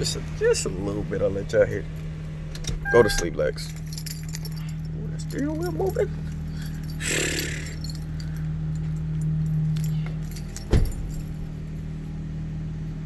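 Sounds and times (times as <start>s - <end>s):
car engine starting and humming: 0.0s - 13.0s
engine revving: 7.0s - 8.0s.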